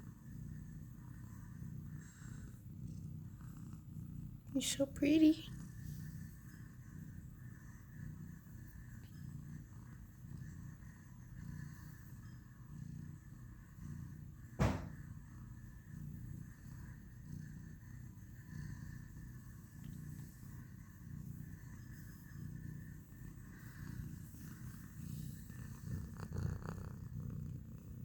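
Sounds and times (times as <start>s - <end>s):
cat purring: 0.0s - 28.0s
short thump: 14.6s - 15.0s.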